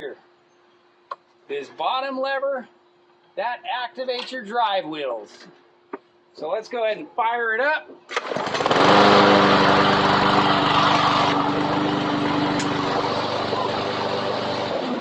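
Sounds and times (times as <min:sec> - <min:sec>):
mower engine starting and running: 0:08.1 - 0:15.0.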